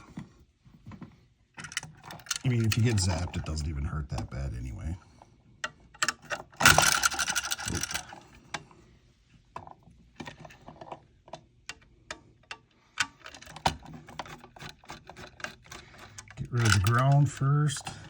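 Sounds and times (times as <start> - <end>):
screwdriver scraping rattle: 1.6 - 3.6, 6.0 - 8.2, 13.0 - 18.0.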